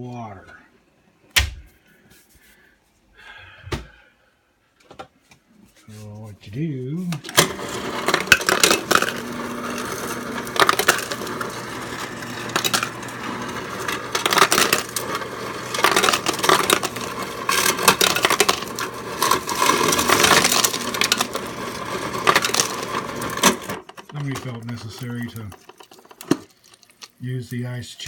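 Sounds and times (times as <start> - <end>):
ice dispenser motor humming: 7.0 - 28.0
ice clattering into a bowl: 7.2 - 28.0.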